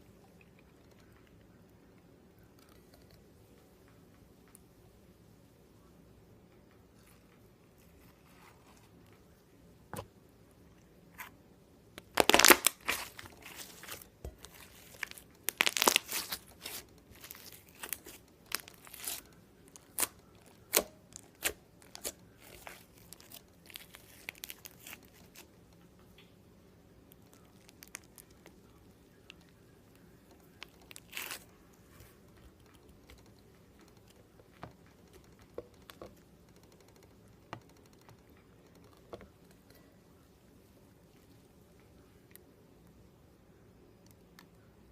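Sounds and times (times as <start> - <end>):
slime crackling and popping: 12.0 - 25.5, 27.1 - 28.6, 30.3 - 31.5.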